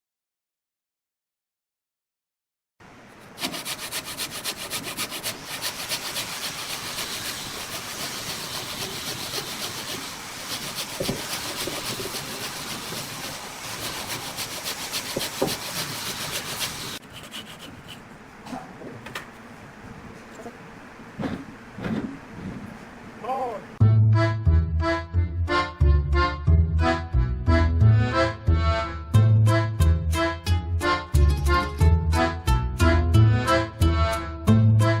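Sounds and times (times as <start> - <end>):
tool rasping against wood: 3.3 - 18.1.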